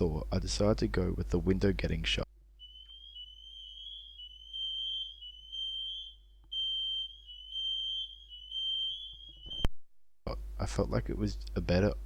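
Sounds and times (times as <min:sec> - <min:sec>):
fire alarm pulsing tone: 0:02.6 - 0:09.7.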